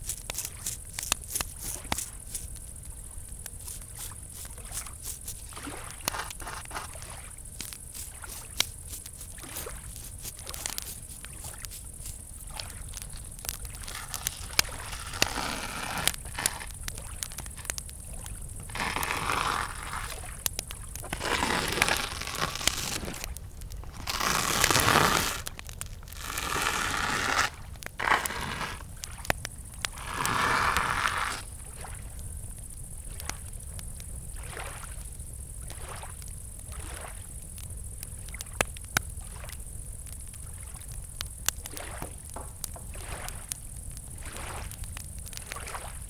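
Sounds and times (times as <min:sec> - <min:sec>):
wood fire crackling and popping: 0:00.0 - 0:31.5, 0:40.0 - 0:45.6
crickets chirring: 0:00.0 - 0:46.0
lake water lapping: 0:00.1 - 0:29.2, 0:42.9 - 0:43.4, 0:44.2 - 0:44.7.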